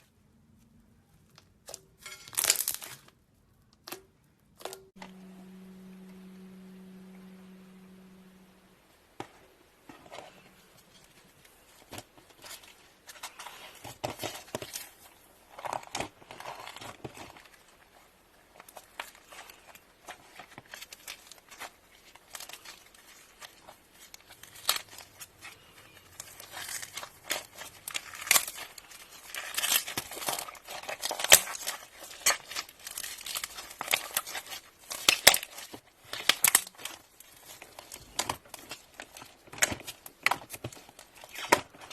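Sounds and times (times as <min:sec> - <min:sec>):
hands kneading sticky slime: 0:09.7 - 0:41.9.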